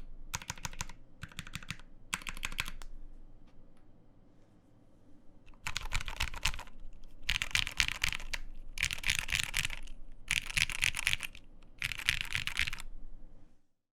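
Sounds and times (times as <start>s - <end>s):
mechanical keyboard key clacks: 0.4s - 2.8s, 5.5s - 6.7s, 7.3s - 12.8s.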